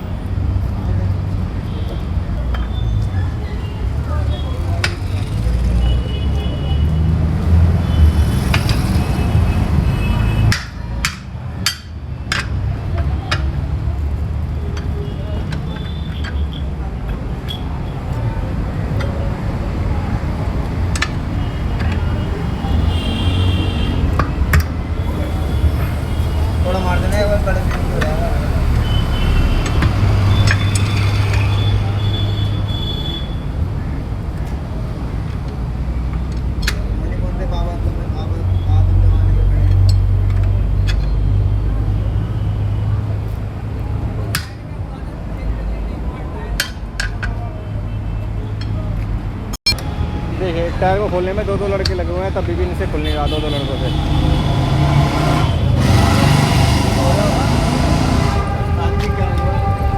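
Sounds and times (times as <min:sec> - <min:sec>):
sharp metallic strikes: 0:49.6 - 0:50.2.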